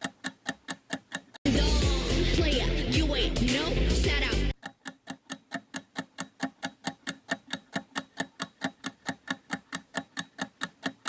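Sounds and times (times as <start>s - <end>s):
rapid even ticking: 0.0s - 1.4s, 4.5s - 11.0s.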